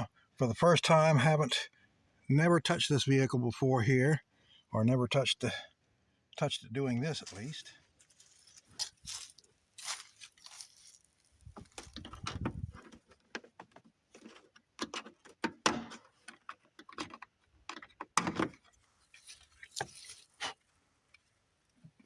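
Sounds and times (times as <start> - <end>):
clicks and rattles of hand tools: 11.8 - 20.3.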